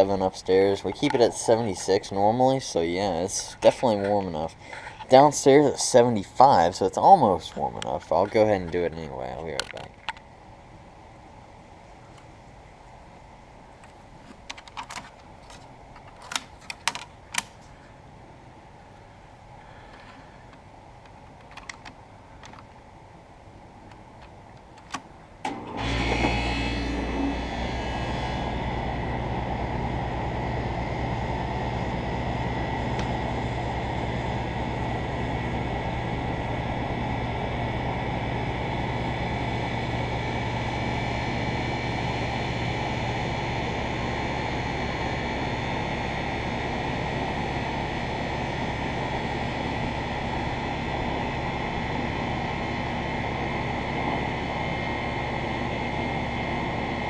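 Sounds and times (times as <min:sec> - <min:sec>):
air conditioner compressor humming: 0:00.0 - 0:57.0
air conditioner clicks: 0:13.8 - 0:17.6, 0:20.0 - 0:22.8, 0:23.8 - 0:26.3.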